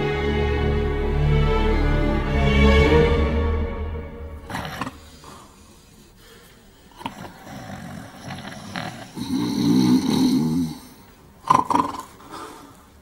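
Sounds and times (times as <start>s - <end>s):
men snoring: 4.4s - 6.2s, 6.8s - 12.4s.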